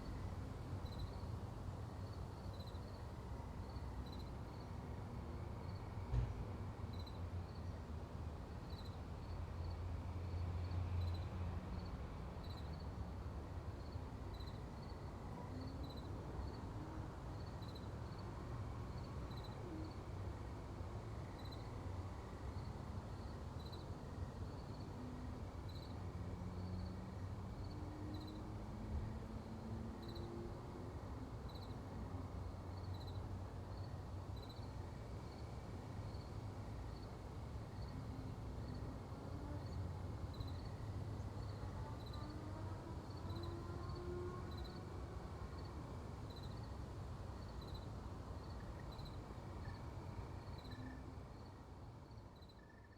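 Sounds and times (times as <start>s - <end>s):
distant road traffic rumble: 0.0s - 52.3s
cricket chirping: 0.8s - 1.3s, 2.0s - 3.0s, 37.7s - 38.8s, 39.6s - 42.3s, 46.3s - 46.8s, 47.4s - 52.9s.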